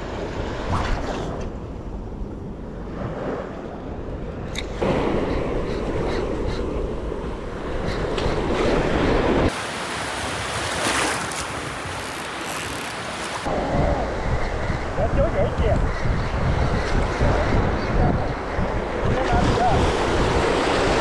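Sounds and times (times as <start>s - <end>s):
wind buffeting microphone: 10.5s - 21.0s.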